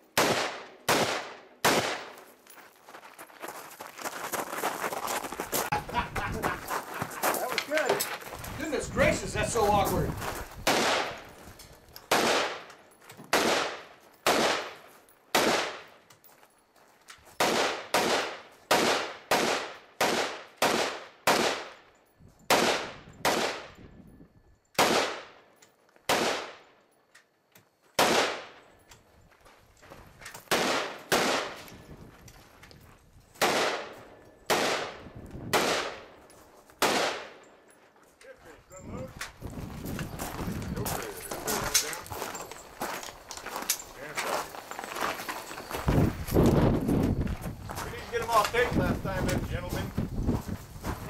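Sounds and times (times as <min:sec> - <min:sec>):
rifle shots with echo: 0:00.1 - 0:02.2, 0:10.6 - 0:11.3, 0:12.1 - 0:12.7, 0:13.3 - 0:15.9, 0:17.4 - 0:21.8, 0:22.5 - 0:23.8, 0:24.8 - 0:25.4, 0:26.1 - 0:26.7, 0:28.0 - 0:28.6, 0:30.5 - 0:31.7, 0:33.4 - 0:36.2, 0:36.8 - 0:37.5.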